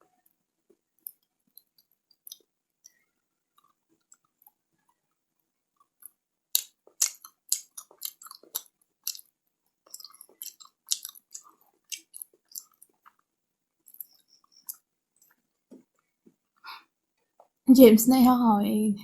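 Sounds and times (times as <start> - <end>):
wet chewing clicks: 1.0 - 4.9, 5.8 - 16.1
crisp snapping bites: 6.6 - 9.3, 9.9 - 12.9.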